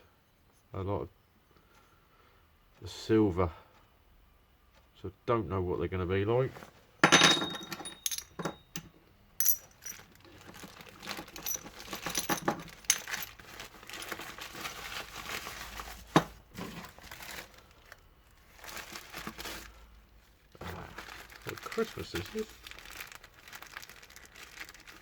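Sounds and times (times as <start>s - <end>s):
small metal parts clinking: 7.0s - 14.2s
plastic packaging rustling: 9.6s - 25.0s.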